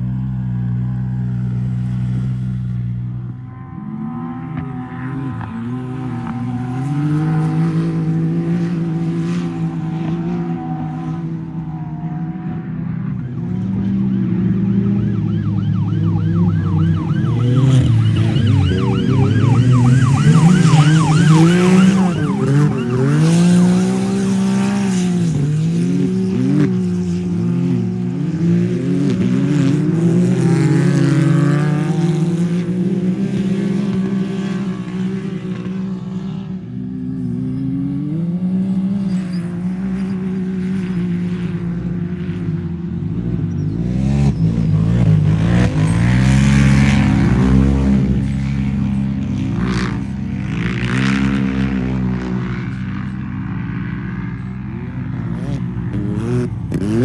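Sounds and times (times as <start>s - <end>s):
off-road vehicle engine revving: 15.9s - 35.3s, 55.1s - 57.0s.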